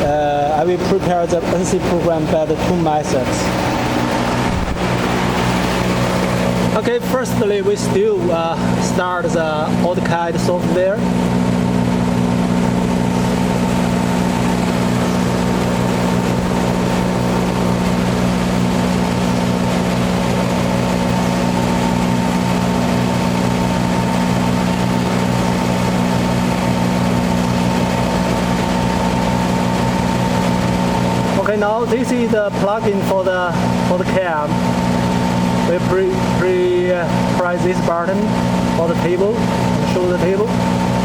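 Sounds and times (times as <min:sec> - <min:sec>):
high-pitched whine: 0:00.0 - 0:07.7
steady machine hum: 0:00.0 - 0:41.0.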